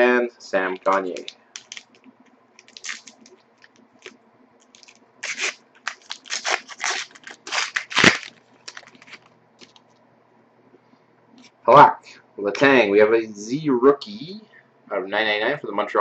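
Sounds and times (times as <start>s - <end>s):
wrapper crinkling: 0.7s - 9.8s.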